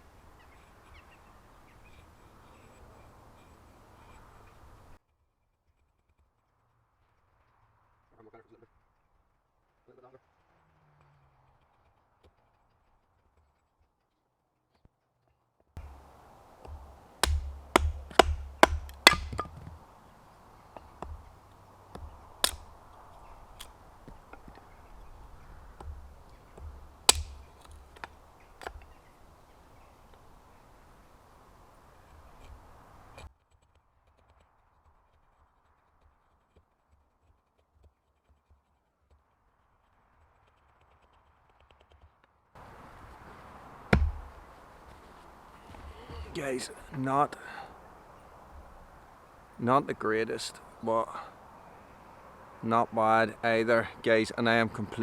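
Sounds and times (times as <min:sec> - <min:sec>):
axe chopping wood: 0:15.8 - 0:20.0, 0:20.6 - 0:29.0, 0:43.8 - 0:45.0.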